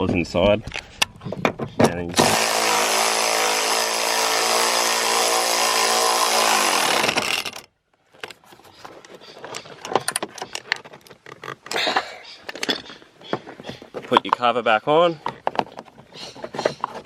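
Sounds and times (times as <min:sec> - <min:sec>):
power driver spinning: 0:02.1 - 0:07.7.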